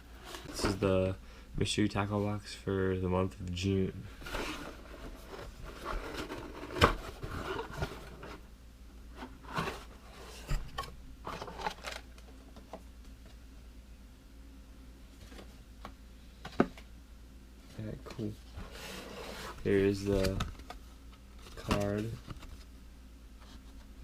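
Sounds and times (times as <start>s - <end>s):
packaging rustling and scraping: 0.1s - 0.9s, 4.2s - 8.5s, 9.2s - 12.3s, 18.1s - 20.7s, 21.4s - 22.7s.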